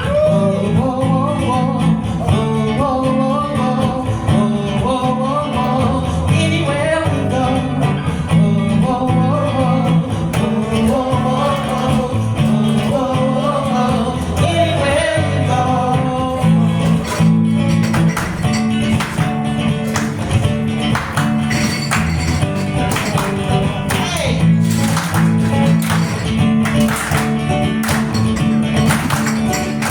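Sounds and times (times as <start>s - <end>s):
person singing: 0.0s - 17.3s
guitar strumming: 0.0s - 29.9s
steady bass line: 0.0s - 29.9s.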